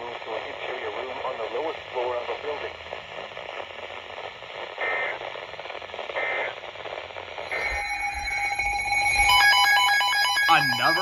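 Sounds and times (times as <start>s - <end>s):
radio static: 0.0s - 8.4s, 10.4s - 11.0s
data tone bursts: 7.4s - 11.0s
steady tone: 7.5s - 11.0s.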